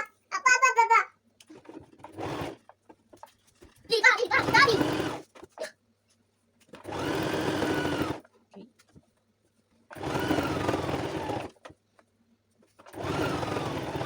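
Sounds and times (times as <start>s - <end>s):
electric sewing machine running: 1.5s - 2.7s, 4.2s - 5.5s, 6.7s - 8.3s, 9.9s - 11.7s, 12.8s - 14.0s.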